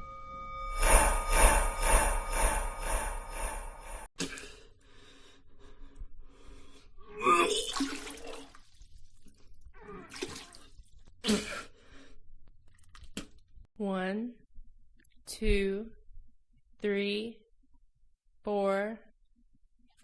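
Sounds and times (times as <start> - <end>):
dense pulsing sound effect: 0.0 - 4.1
person retching and vomiting: 4.2 - 4.6, 7.1 - 8.7, 9.7 - 11.6
wet splashing: 7.6 - 11.1.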